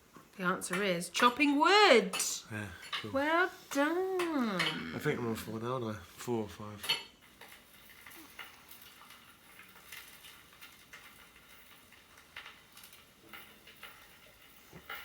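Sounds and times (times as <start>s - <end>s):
egg frying in a pan: 5.9s - 15.0s.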